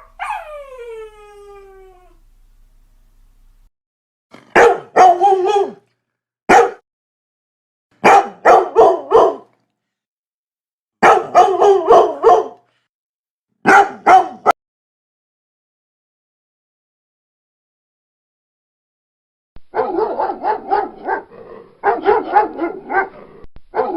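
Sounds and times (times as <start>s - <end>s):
dog barking: 4.5s - 5.8s, 6.5s - 6.8s, 8.0s - 9.6s, 11.0s - 12.7s, 13.6s - 14.6s, 19.7s - 23.9s.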